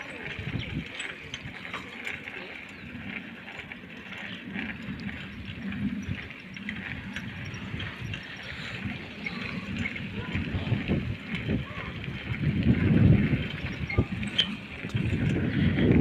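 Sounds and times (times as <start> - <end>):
bicycle road noise rumble: 0.0 - 16.0
wind buffeting microphone: 0.0 - 16.0.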